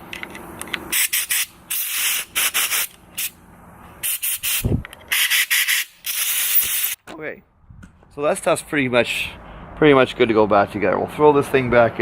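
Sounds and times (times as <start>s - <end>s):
air blowgun hissing blasts: 0.9s - 3.4s, 4.0s - 7.0s.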